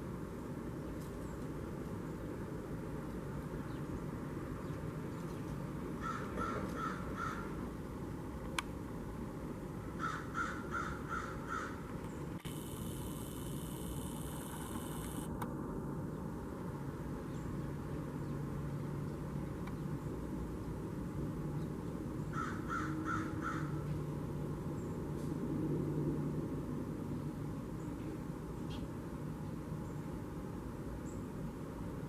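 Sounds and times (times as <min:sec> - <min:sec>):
blue jay harsh calls: 0:06.0 - 0:07.6, 0:10.0 - 0:11.8, 0:22.3 - 0:23.8.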